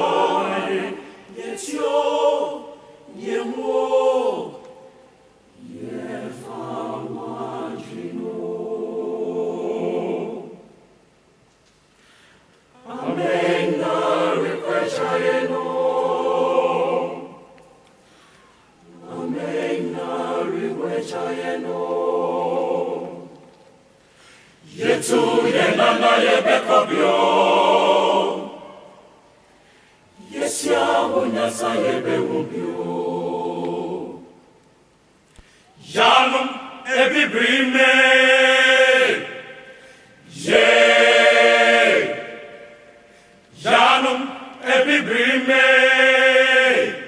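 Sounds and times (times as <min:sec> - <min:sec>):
choir singing unaccompanied: 0:00.0 - 0:10.9, 0:12.8 - 0:17.8, 0:18.8 - 0:23.5, 0:24.6 - 0:29.2, 0:30.1 - 0:34.6, 0:35.8 - 0:47.0.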